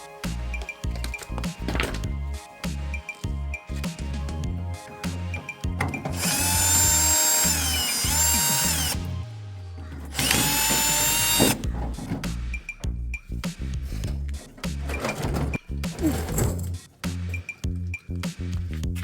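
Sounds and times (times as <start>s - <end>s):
background music: 0.0s - 19.0s
power drill whining: 4.8s - 9.2s, 10.0s - 11.8s.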